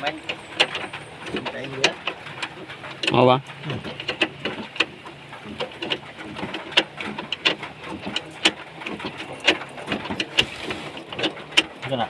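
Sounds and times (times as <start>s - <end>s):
sharp clicks and knocks: 0.0s - 12.0s.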